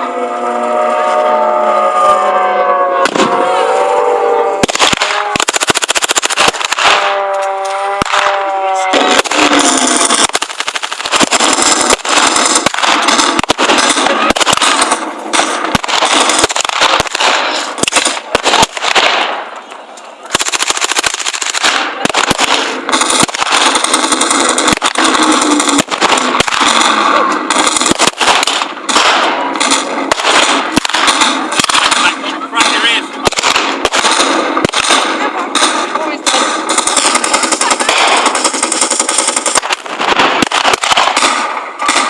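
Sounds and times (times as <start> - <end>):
machine-gun fire bursts: 4.6 - 19.5, 20.3 - 42.0.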